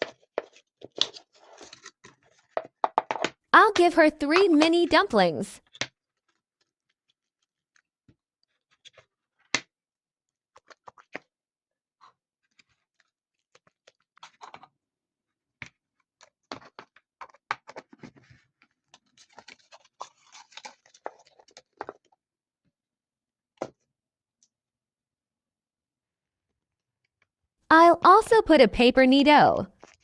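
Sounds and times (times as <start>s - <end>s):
plastic packaging rustling: 19.0s - 22.1s.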